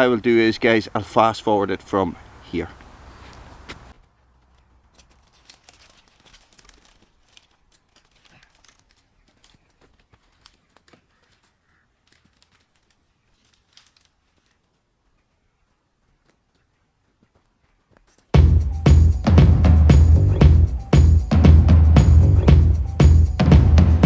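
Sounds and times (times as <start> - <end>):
faint crackling and rustling clicks: 2.6 - 18.3.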